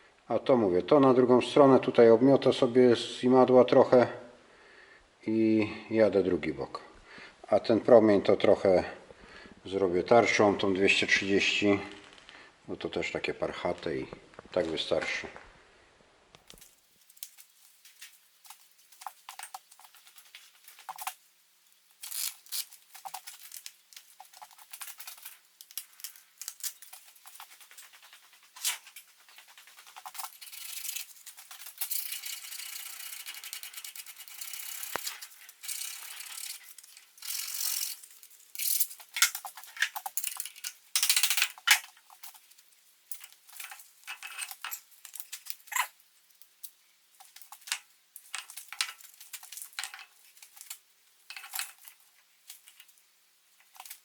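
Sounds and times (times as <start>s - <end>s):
scratchy brushing and scraping: 16.6s - 46.0s.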